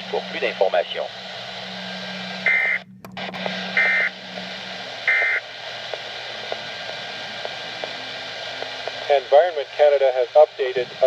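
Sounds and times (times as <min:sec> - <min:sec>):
low hum: 0:00.0 - 0:09.2
radio hiss: 0:00.0 - 0:11.0
digital data tone bursts: 0:02.4 - 0:02.8, 0:03.6 - 0:04.2, 0:05.0 - 0:05.4.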